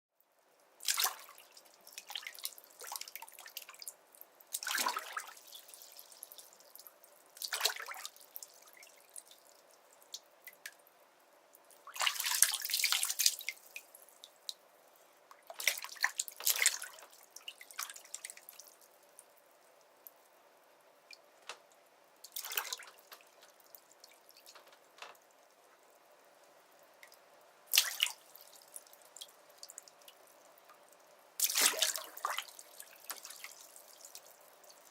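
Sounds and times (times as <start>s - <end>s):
water drips: 0.2s - 20.4s, 21.0s - 34.9s
water splashing in bathtub: 0.8s - 3.9s, 4.5s - 6.8s, 7.4s - 9.3s, 11.8s - 13.6s, 15.4s - 18.8s, 22.2s - 24.7s, 27.7s - 28.7s, 31.4s - 34.4s.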